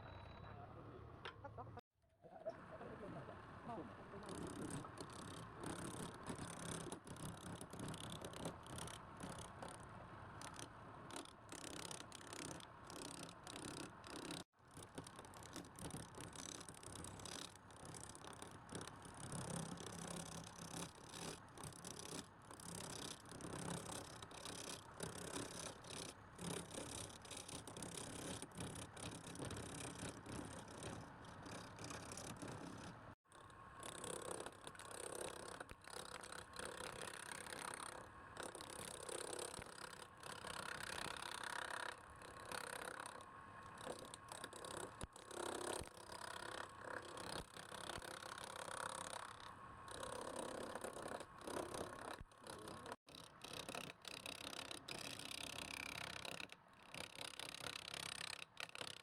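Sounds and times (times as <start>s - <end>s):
rasping scraping noise: 15.3s - 33.1s, 33.8s - 58.9s.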